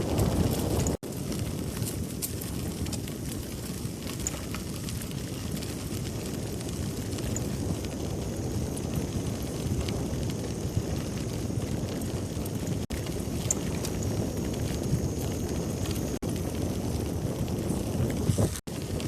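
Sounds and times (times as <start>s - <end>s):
bicycle tyres rolling on trail: 0.0s - 19.0s
wind buffeting microphone: 0.0s - 19.0s
faint small ticks: 3.7s - 5.7s.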